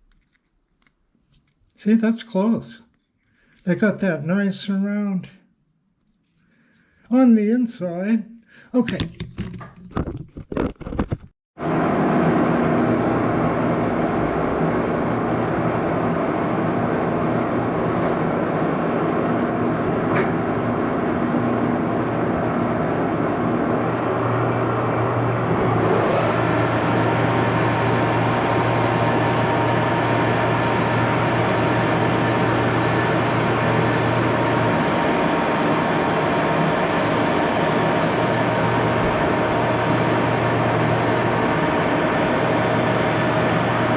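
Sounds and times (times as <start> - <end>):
machine humming: 11.6 - 43.9.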